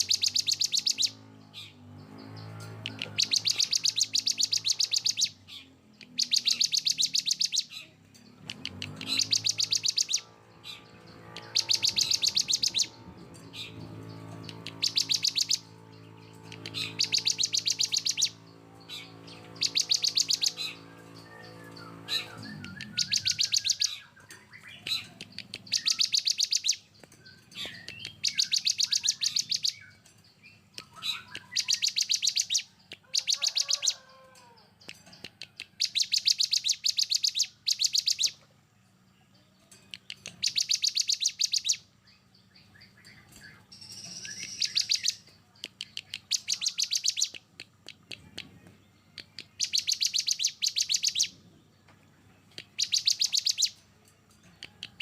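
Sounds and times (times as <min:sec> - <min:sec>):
soft bird chirps: 0:00.0 - 0:55.0
songbird harsh rattling bursts: 0:08.6 - 0:34.0.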